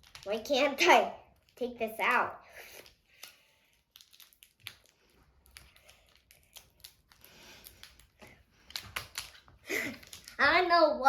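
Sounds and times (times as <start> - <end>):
sweet wrapper crinkling: 2.7 - 10.4.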